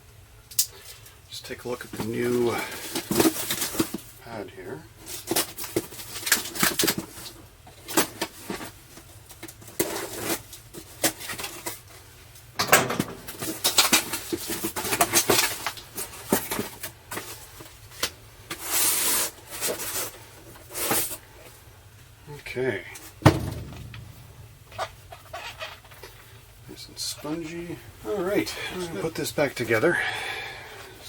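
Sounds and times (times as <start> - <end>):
humidifier pad rustling and crinkling: 1.6 - 12.3, 12.9 - 22.1.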